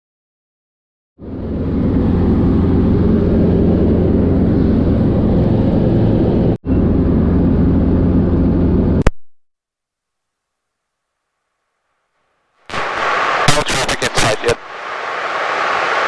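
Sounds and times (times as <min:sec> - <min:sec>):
helicopter drone: 0:01.2 - 0:09.0, 0:12.8 - 0:16.0.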